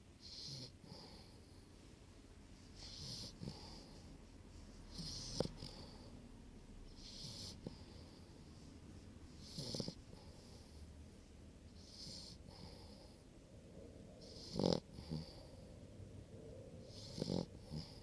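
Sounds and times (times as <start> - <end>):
puppy snoring: 0.2 - 1.7, 2.8 - 6.2, 6.8 - 8.7, 9.3 - 10.9, 11.7 - 13.3, 14.2 - 15.8, 16.8 - 18.0.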